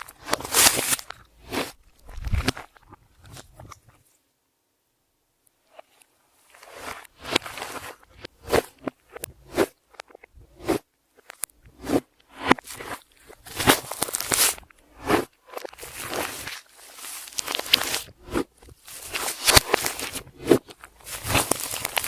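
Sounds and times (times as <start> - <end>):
slime squelching by hand: 11.8 - 22.0.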